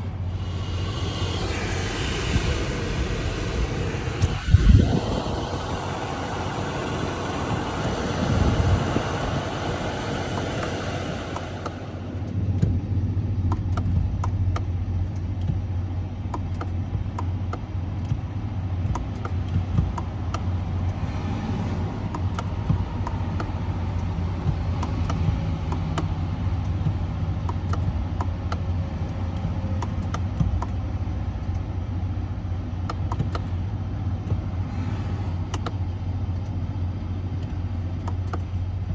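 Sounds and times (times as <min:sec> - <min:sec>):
vehicle broad rush: 0:00.0 - 0:12.7, 0:20.1 - 0:25.4
low engine hum: 0:00.0 - 0:38.9.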